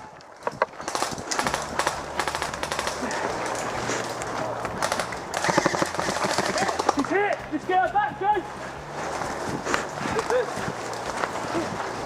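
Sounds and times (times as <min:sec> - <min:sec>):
airsoft guns firing bursts: 0:00.8 - 0:03.6, 0:04.8 - 0:07.2.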